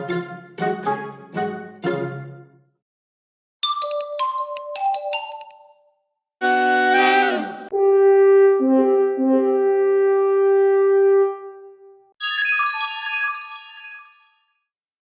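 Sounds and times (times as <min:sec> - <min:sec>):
held brass-like chord: 0:06.4 - 0:11.6.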